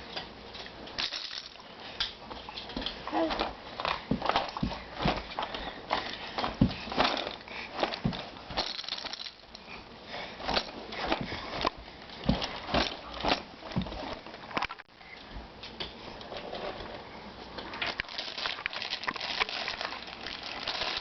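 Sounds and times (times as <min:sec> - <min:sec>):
plastic package crinkling: 0:17.8 - 0:21.0.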